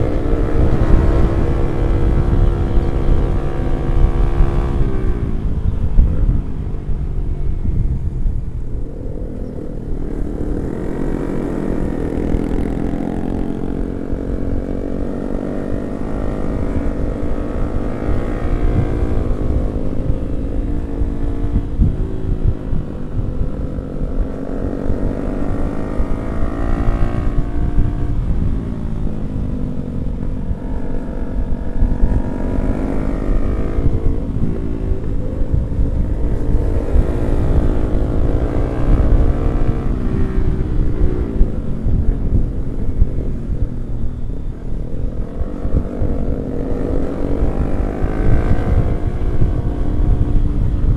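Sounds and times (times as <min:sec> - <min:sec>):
motorcycle engine revving: 0:00.0 - 0:50.9
wind rumble on microphone: 0:00.0 - 0:50.9.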